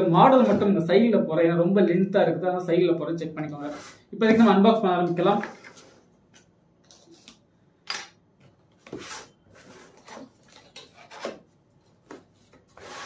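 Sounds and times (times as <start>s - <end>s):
cardboard box scrapes and knocks: 8.9s - 10.2s.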